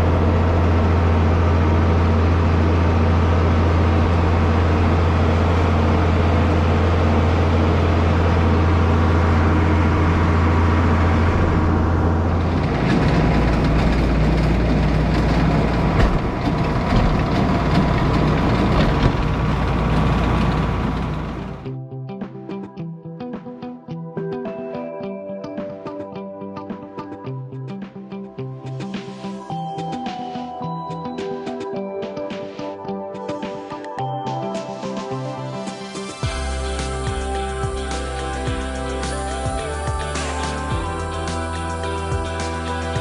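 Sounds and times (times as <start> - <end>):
tractor engine running: 0.0 - 21.7
rattling clatter with knocks: 12.4 - 21.3.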